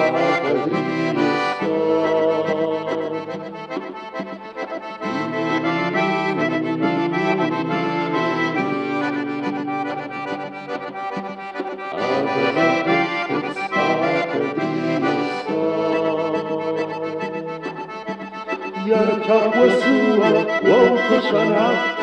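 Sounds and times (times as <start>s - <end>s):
folk music with accordion: 0.0s - 22.0s.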